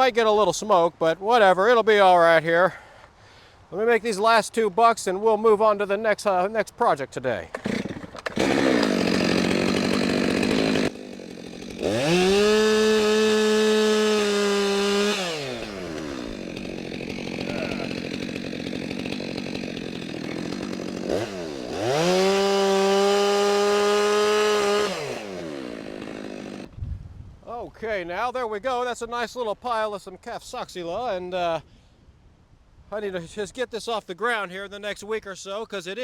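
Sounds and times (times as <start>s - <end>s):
chainsaw cutting and idling: 7.5s - 26.7s.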